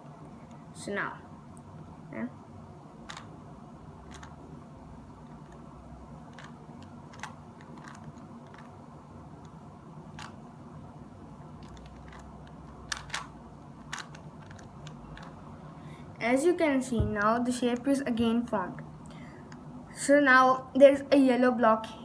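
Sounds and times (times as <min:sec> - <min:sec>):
plastic puzzle cube clicking: 0:03.1 - 0:03.3, 0:04.1 - 0:04.4, 0:06.3 - 0:08.7, 0:09.4 - 0:10.4, 0:11.6 - 0:15.4.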